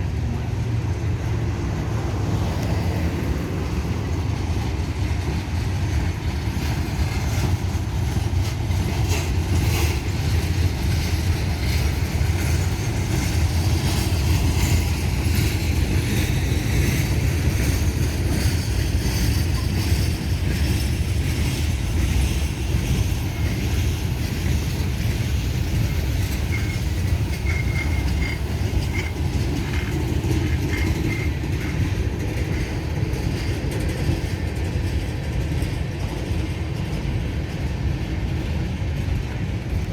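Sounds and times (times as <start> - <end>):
train wheels rumbling on rail: 0.0 - 39.9
high wheel squeaks: 3.8 - 33.5.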